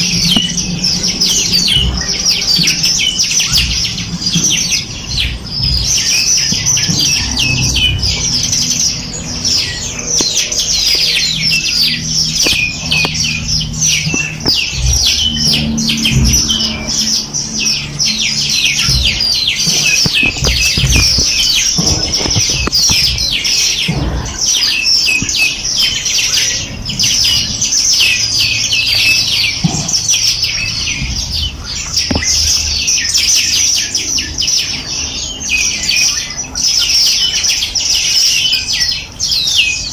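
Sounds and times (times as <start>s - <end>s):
low rumble: 0.0s - 33.0s
songbirds chirping and twittering: 0.0s - 39.9s.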